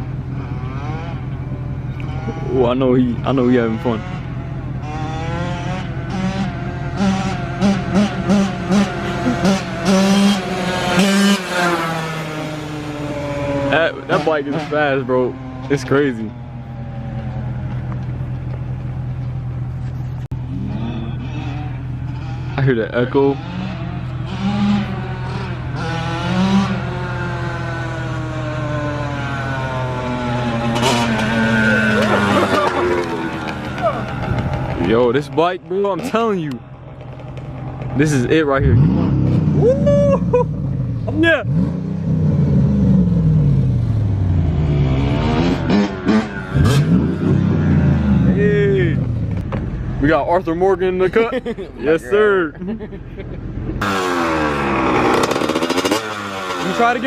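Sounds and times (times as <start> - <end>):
dirt bike engine revving: 0.0 - 1.4, 2.0 - 17.9, 20.4 - 57.0.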